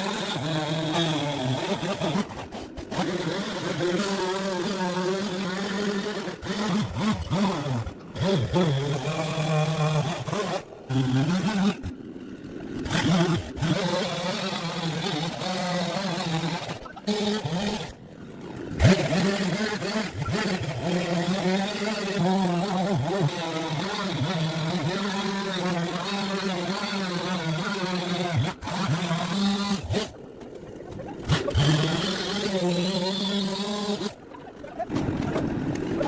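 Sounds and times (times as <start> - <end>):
engine running and revving: 0.0 - 2.3, 3.0 - 11.9, 18.8 - 30.1.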